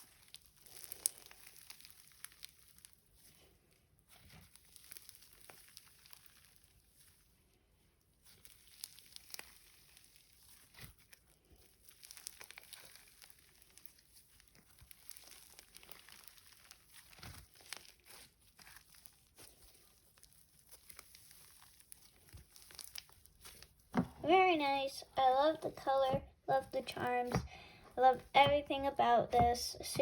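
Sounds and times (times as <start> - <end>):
beads crunching: 0.0 - 7.2, 8.2 - 24.2
slime crackling and crunching: 0.0 - 30.0.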